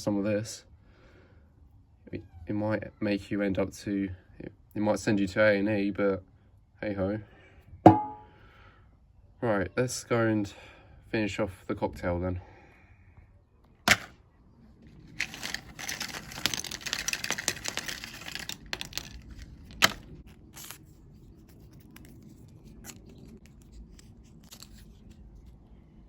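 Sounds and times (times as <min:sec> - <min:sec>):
sharp knock: 0:07.9 - 0:08.3
crackling rustling noise: 0:14.6 - 0:26.0.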